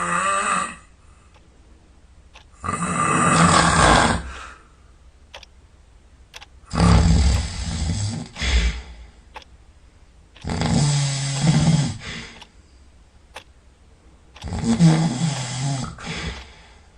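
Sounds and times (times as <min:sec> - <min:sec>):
person snoring: 0:00.0 - 0:00.9, 0:02.6 - 0:04.6, 0:06.7 - 0:09.0, 0:10.4 - 0:12.4, 0:14.4 - 0:16.6
quiet breathing: 0:00.0 - 0:01.6, 0:02.4 - 0:05.4, 0:06.6 - 0:13.4, 0:14.3 - 0:16.9.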